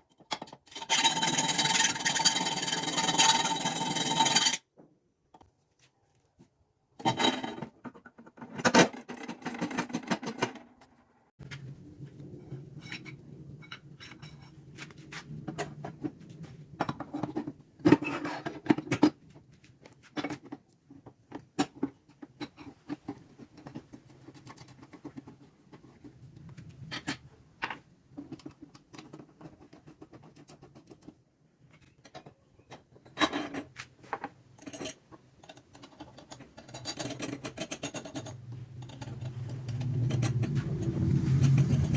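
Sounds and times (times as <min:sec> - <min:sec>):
metal parts clinking and scraping: 0:00.1 - 0:04.6, 0:12.8 - 0:15.9, 0:31.7 - 0:41.9.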